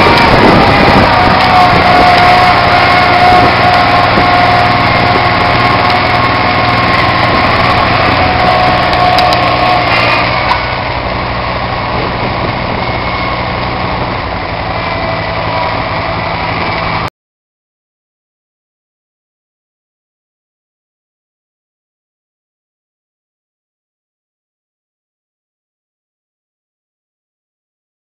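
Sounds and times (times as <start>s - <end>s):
diesel tractor engine running: 0.0s - 17.1s.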